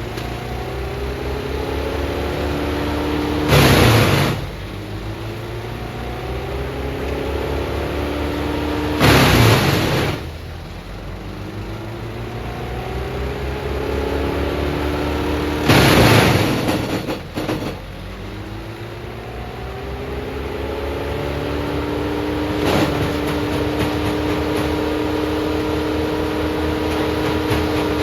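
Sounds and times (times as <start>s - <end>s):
diesel engine revving: 0.0s - 28.0s
loud burst of noise: 3.2s - 4.8s, 8.7s - 10.7s, 15.2s - 18.1s, 22.4s - 28.0s.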